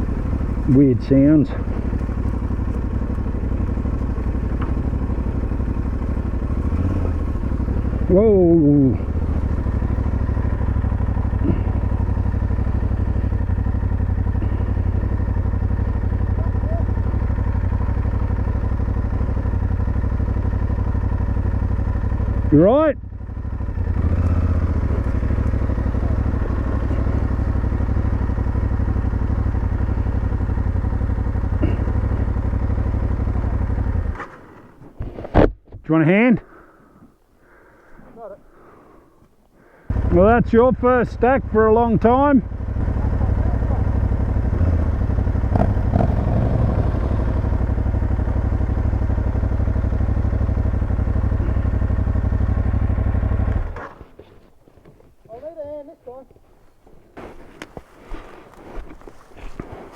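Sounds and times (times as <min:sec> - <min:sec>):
motorcycle engine idling: 0:00.0 - 0:34.9, 0:36.4 - 0:59.9
light clattering knocks: 0:03.8 - 0:05.8.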